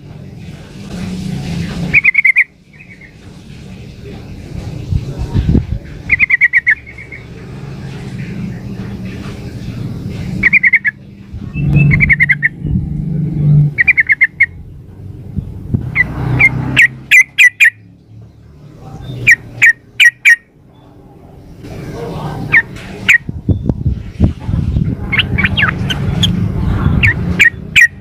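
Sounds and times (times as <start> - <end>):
bird calls and chirps: 1.9 - 3.2, 6.0 - 7.4, 10.4 - 12.8, 13.7 - 14.8, 15.4 - 21.0, 22.4 - 23.9, 24.8 - 28.0.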